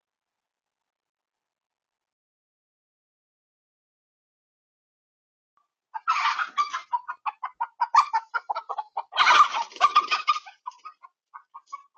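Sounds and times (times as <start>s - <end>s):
chickens clucking: 6.0s - 11.9s
harsh chicken calls: 6.0s - 11.9s.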